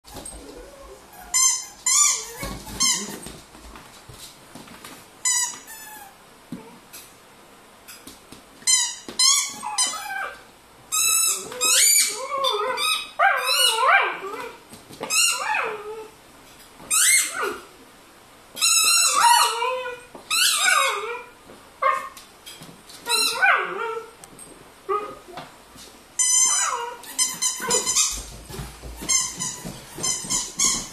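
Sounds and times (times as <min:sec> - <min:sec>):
squeaky dog toy squeals: 0:01.1 - 0:03.2, 0:05.2 - 0:06.2, 0:08.7 - 0:10.3, 0:10.9 - 0:13.9, 0:16.9 - 0:17.5, 0:18.6 - 0:21.1, 0:26.2 - 0:28.2.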